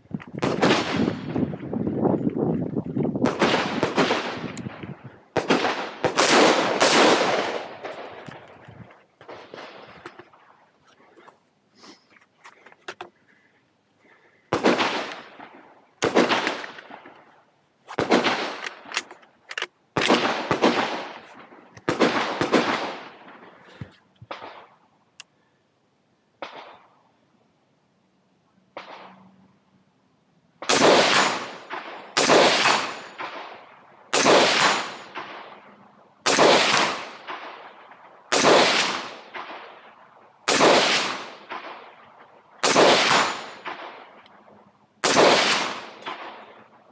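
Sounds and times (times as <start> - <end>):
rifle shots: 0.4 - 1.6, 3.2 - 8.5, 9.2 - 10.5, 14.5 - 17.2, 17.9 - 23.6, 24.3 - 24.8, 26.4 - 26.9, 28.8 - 29.3, 30.6 - 44.2, 45.0 - 46.7.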